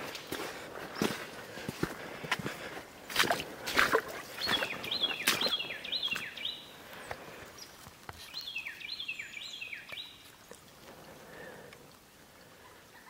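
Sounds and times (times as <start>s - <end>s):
footsteps in dry leaves: 0.0s - 10.4s
songbird singing repeated notes: 2.8s - 10.7s.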